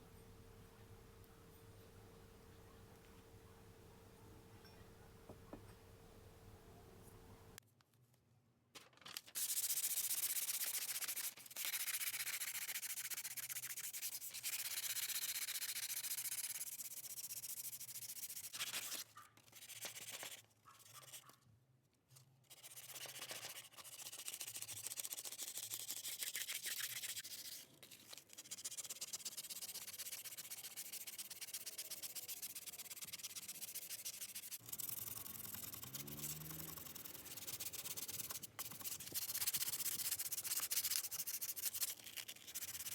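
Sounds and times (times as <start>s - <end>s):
abrasive sanding on metal: 9.4s - 19.0s, 28.5s - 41.8s.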